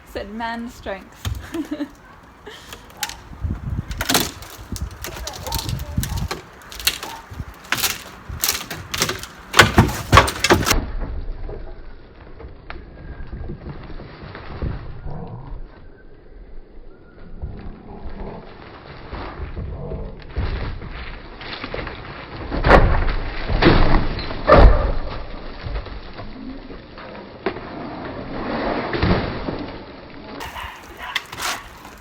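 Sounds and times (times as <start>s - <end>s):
loose wood knocking and rattling: 1.1s - 10.8s, 30.4s - 32.0s
sledgehammer striking wooden boards: 1.2s - 1.8s, 2.7s - 10.8s, 30.4s - 32.0s.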